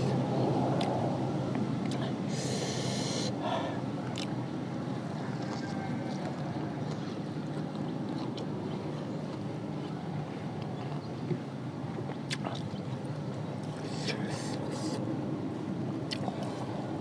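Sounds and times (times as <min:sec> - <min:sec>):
person chewing: 0:01.8 - 0:02.1, 0:04.0 - 0:04.4, 0:05.4 - 0:11.1, 0:11.9 - 0:12.9, 0:16.0 - 0:16.6
loud hissing breath: 0:02.3 - 0:03.8.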